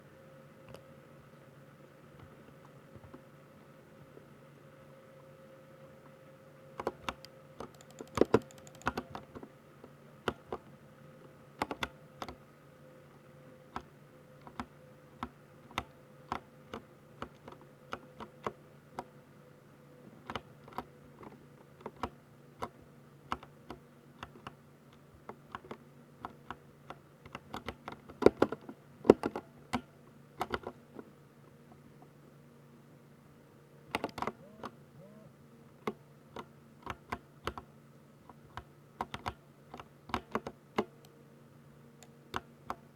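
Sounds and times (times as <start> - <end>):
faint steady hum: 0.0 - 42.9
mechanical keyboard typing: 6.8 - 9.4, 33.9 - 34.8, 38.5 - 40.9.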